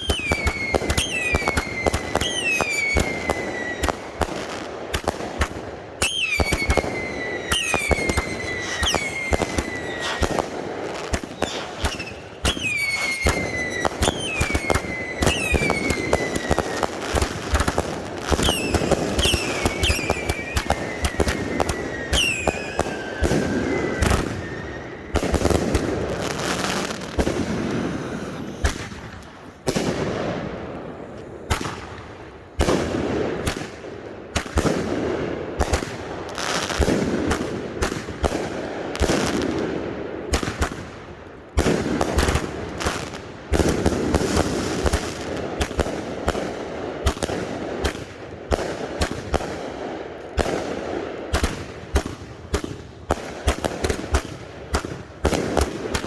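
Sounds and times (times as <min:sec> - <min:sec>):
fireworks launch bangs: 0:00.0 - 0:40.9
fireworks aerial bursts: 0:00.0 - 0:56.0
fireworks crackling: 0:00.0 - 0:56.0
loud firework blasts: 0:00.0 - 0:56.0.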